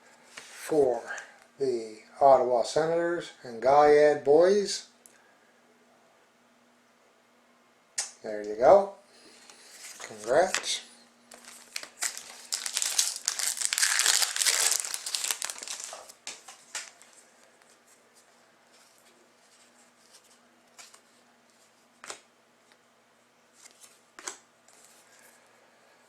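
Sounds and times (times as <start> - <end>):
wrapper crinkling and tearing: 11.3 - 17.1
cards tapping and flicking: 22.0 - 22.3, 24.2 - 24.4.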